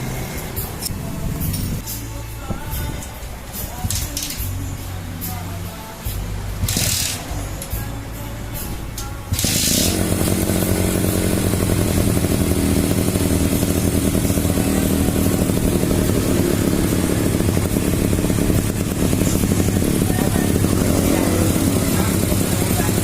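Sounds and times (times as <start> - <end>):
two-stroke engine idling: 5.9 - 8.5, 9.1 - 23.0.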